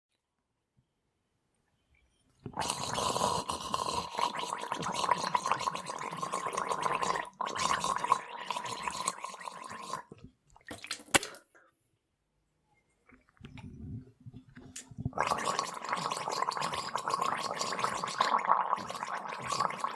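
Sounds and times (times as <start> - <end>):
person gargling: 2.6 - 10.1, 15.1 - 19.9.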